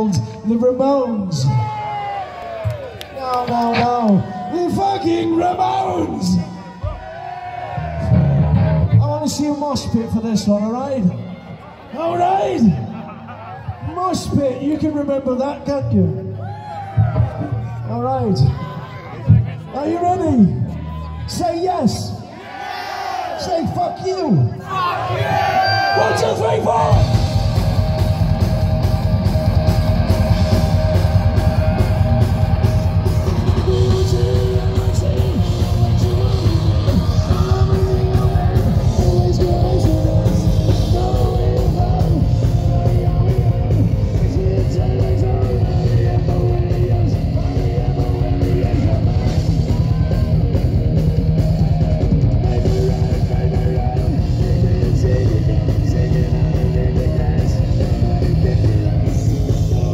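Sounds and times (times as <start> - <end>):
bass guitar: 2.5 - 11.2, 13.6 - 22.2, 26.6 - 59.9
distorted electric guitars: 7.8 - 10.5, 25.6 - 59.9
pounding drums: 26.8 - 59.9
person singing: 33.2 - 50.2, 52.3 - 59.9.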